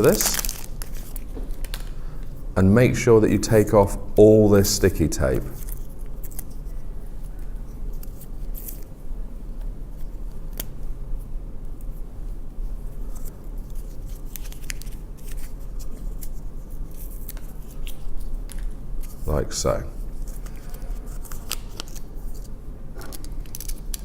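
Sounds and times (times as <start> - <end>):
tape peeling off film: 0.0 - 2.0, 5.4 - 8.9, 13.0 - 24.0
steady low hum: 0.0 - 24.0.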